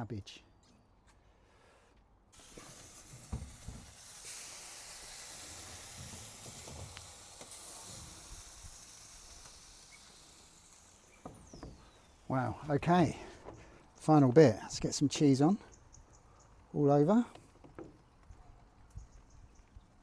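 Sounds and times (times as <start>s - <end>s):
casserole sizzling: 2.4s - 13.2s.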